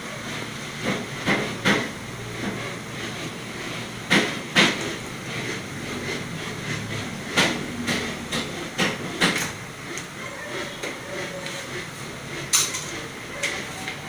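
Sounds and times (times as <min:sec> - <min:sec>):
tools clicking and knocking on machine: 0:06.7 - 0:10.2, 0:12.4 - 0:14.0.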